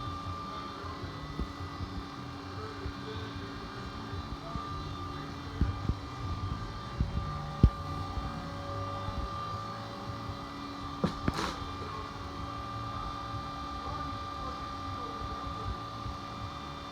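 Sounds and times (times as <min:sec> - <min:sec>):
machinery humming: 0:00.0 - 0:16.9
dull thumps: 0:11.0 - 0:11.8.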